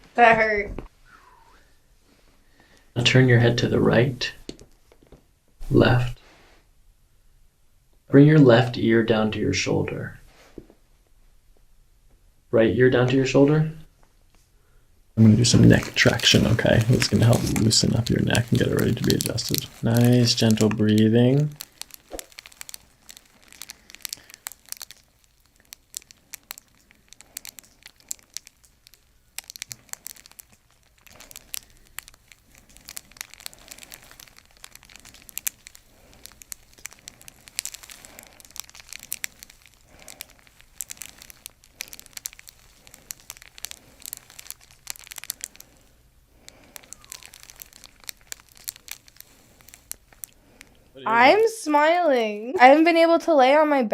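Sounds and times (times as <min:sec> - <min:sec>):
soft crinkling and rustling: 0:02.0 - 0:06.2, 0:15.2 - 0:53.1.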